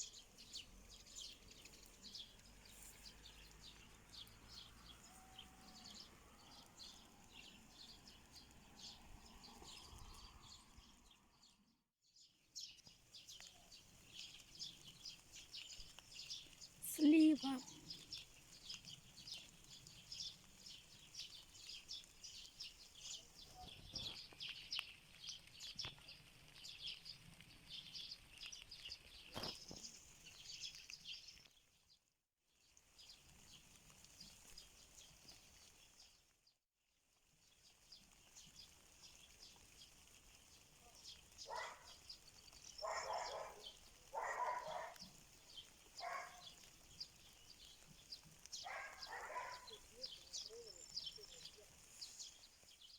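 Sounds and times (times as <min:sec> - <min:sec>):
small birds chirping: 0:00.0 - 0:32.0, 0:32.6 - 0:36.3, 0:37.4 - 0:52.9.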